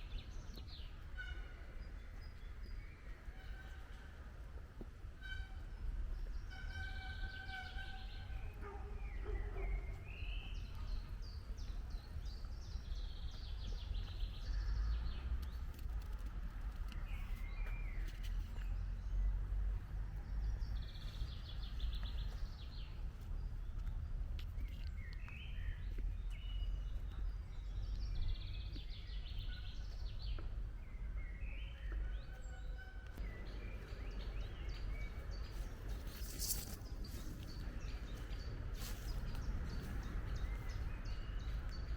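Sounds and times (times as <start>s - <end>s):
birds singing and calling: 23.6s - 41.9s.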